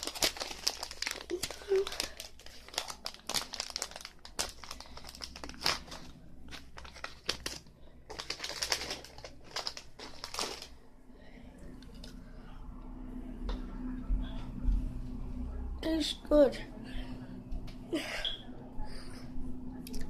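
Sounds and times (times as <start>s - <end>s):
plastic wrapper crinkling: 0.0s - 10.8s.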